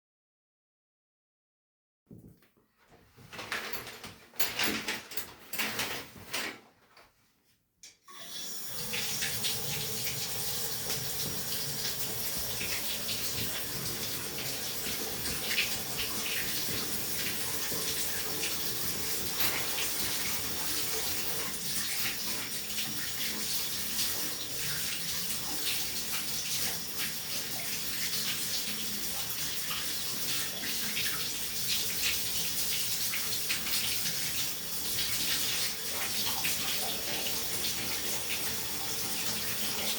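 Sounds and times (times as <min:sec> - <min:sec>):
shower water spraying: 0:08.1 - 0:39.9.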